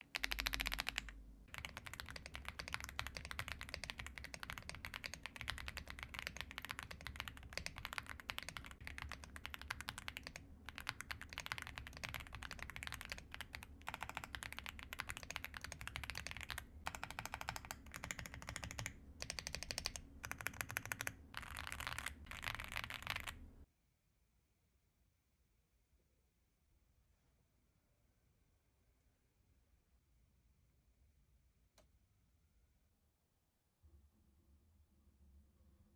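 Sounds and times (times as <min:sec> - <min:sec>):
fast typing on mechanical keyboard: 0:00.0 - 0:23.5.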